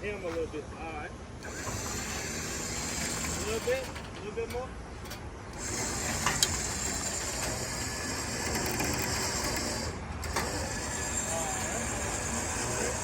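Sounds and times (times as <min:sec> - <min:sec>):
winch ratcheting drone: 0:01.4 - 0:04.1, 0:05.5 - 0:13.0.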